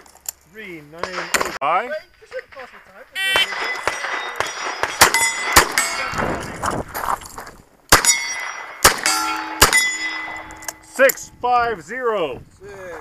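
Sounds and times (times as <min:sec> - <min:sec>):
steel plate ringing: 0:03.2 - 0:06.2, 0:08.0 - 0:11.1.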